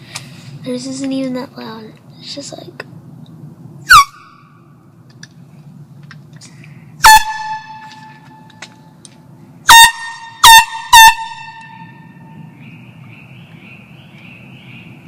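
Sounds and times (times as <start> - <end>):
handheld air horn blasts: 7.0 - 8.6, 9.7 - 12.1.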